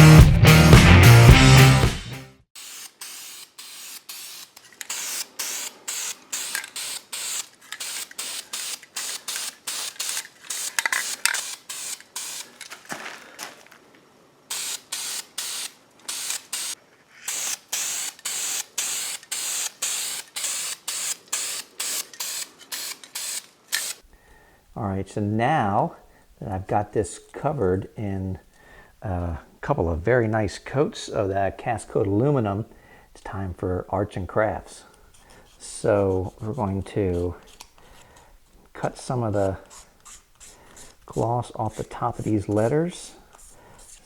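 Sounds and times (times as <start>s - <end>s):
spray paint can hissing: 2.6s - 12.6s, 14.5s - 24.0s.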